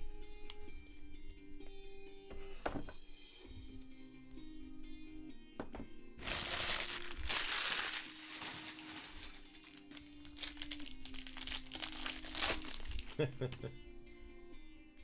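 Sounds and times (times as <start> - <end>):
plastic wrapper crinkling: 6.2 - 13.3.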